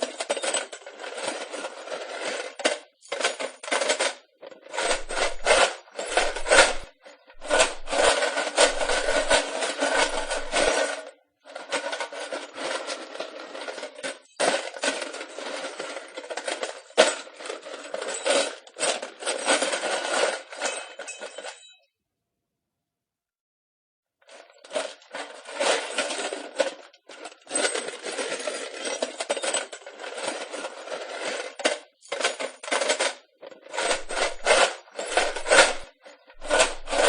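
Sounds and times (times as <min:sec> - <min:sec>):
wooden knocks and scrapes: 0:04.4 - 0:11.0, 0:31.6 - 0:37.0.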